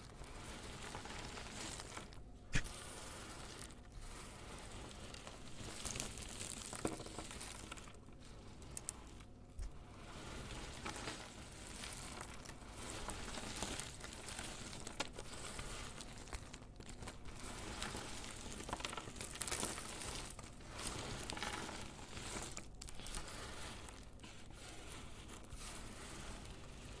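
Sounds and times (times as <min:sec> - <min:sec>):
soap cubes crackling: 0:04.5 - 0:08.0, 0:10.9 - 0:27.0.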